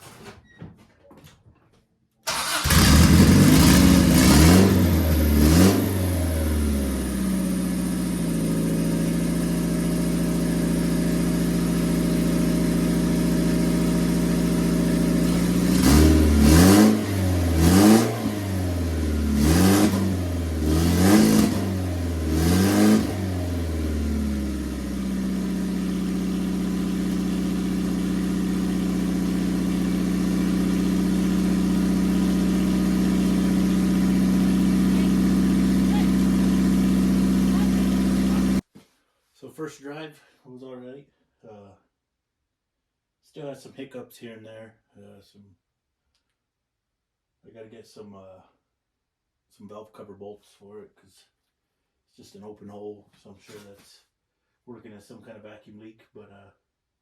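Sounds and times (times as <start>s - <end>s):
car engine starting and idling: 2.2s - 38.6s
engine throttle blips: 2.3s - 7.3s, 26.4s - 38.6s.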